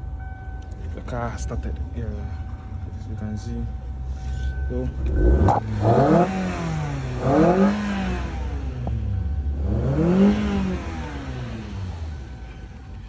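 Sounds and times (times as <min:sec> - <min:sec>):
car engine revving: 0:04.7 - 0:13.0.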